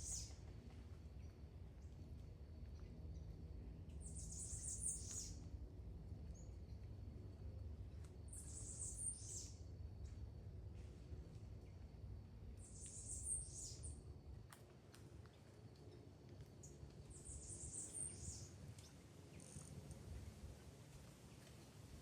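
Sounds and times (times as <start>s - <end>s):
steady low rumble: 0.0s - 8.8s.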